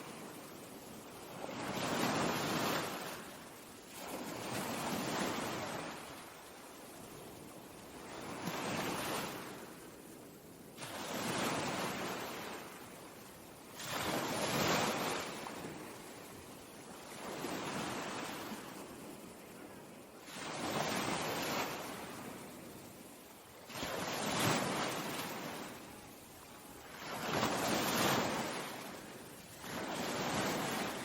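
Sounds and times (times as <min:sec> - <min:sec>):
ocean waves breaking: 0:13.7 - 0:31.0.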